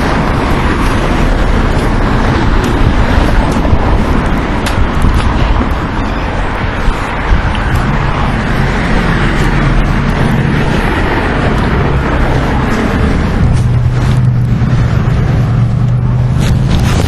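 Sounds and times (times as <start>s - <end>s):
motor vehicle engine hum: 0.0s - 17.0s.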